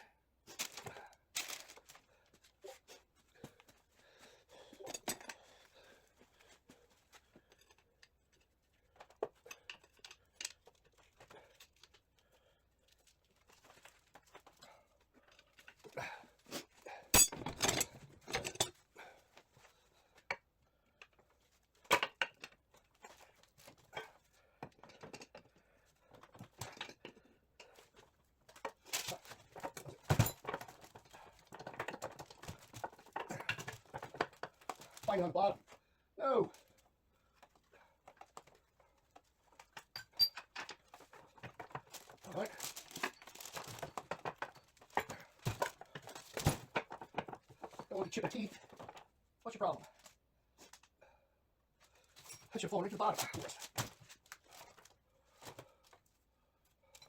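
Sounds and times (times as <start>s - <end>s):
hand tools clinking on metal gears: 17.2s - 17.9s.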